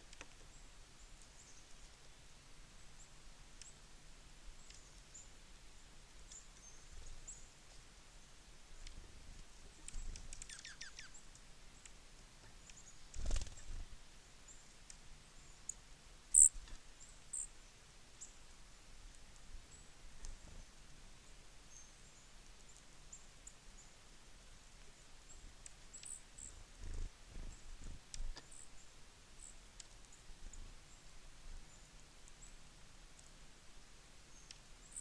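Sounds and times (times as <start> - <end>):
small birds chipping: 0.0 - 35.0
sharp high bird peeps: 10.4 - 11.2, 16.4 - 16.6.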